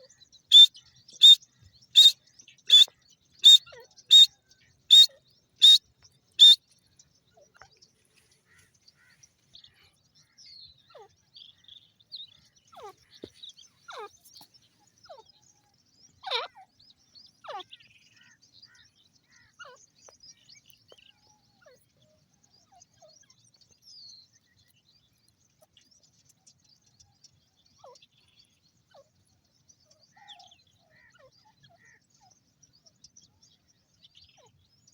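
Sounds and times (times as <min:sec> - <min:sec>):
francolins calling: 0:00.0 - 0:06.7.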